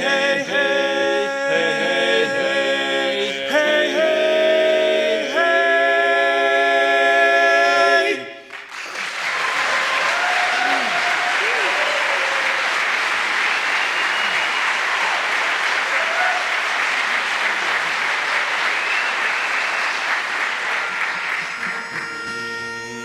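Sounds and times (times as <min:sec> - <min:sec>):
audience applauding: 0:08.5 - 0:22.3.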